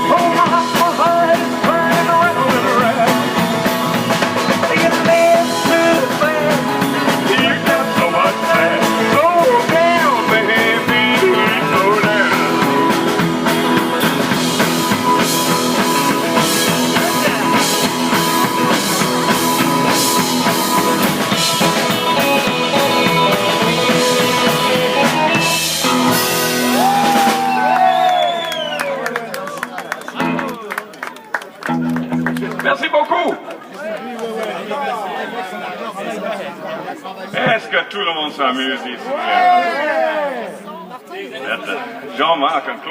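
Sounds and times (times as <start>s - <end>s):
live rock and roll band: 0.0s - 33.5s.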